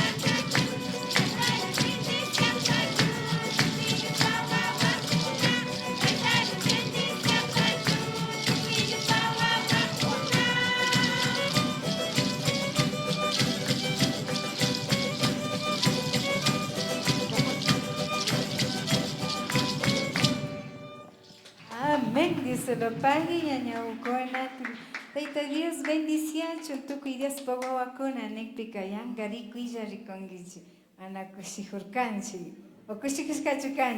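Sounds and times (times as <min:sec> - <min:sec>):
live band playing folk music: 0:00.0 - 0:21.4.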